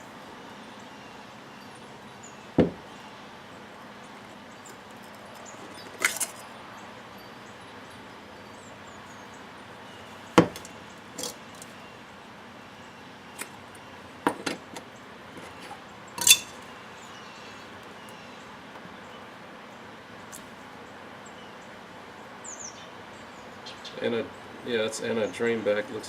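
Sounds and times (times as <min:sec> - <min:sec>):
metal parts clinking: 0:16.2 - 0:16.6.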